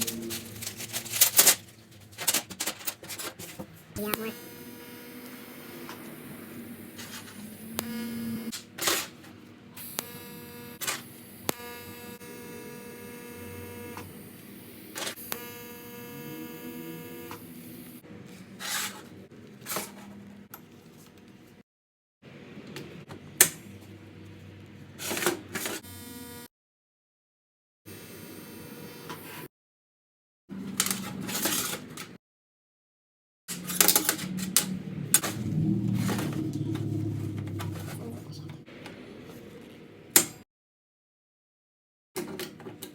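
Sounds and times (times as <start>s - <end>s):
hard parts clicking and rattling: 0.0s - 3.8s
electronic buzzing tone: 4.0s - 8.5s, 9.8s - 18.0s, 25.8s - 26.5s.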